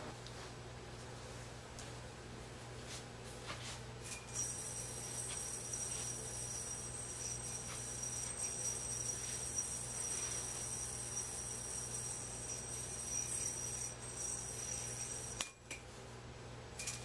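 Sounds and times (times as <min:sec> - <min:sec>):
yo-yo bearing whine: 0:04.0 - 0:15.8.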